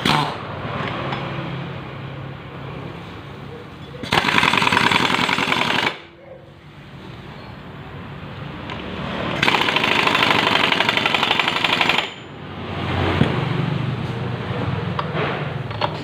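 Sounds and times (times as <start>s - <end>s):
pneumatic impact wrench hammering: 0.0s - 1.2s, 4.0s - 6.1s, 8.7s - 12.3s.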